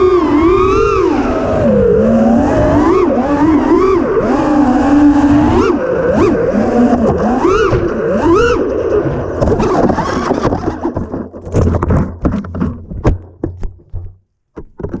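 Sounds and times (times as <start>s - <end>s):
quadcopter motors whining: 0.0s - 10.9s
drone crashing knocks and thumps: 6.8s - 14.0s.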